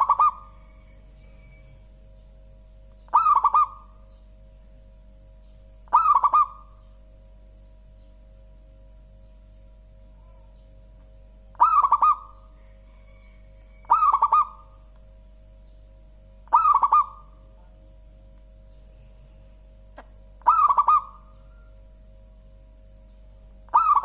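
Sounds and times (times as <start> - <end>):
dove cooing: 0.0 - 2.0, 3.1 - 4.1, 5.9 - 6.8, 11.5 - 14.9, 16.5 - 17.5, 20.4 - 21.8, 23.7 - 24.0.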